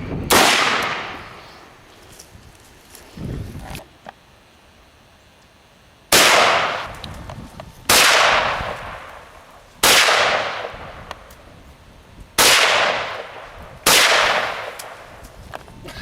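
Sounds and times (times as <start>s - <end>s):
rifle shots with echo: 0.3s - 1.4s, 6.1s - 6.9s, 7.9s - 11.0s, 12.4s - 15.1s.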